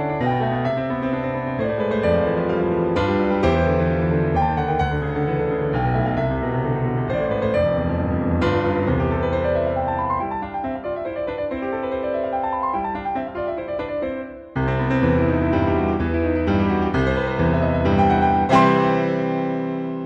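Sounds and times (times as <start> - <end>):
piano music: 0.0 - 20.0.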